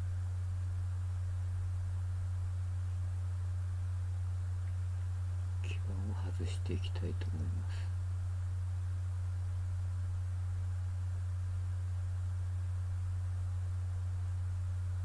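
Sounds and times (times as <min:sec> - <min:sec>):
electrical hum with hiss: 0:00.0 - 0:15.0.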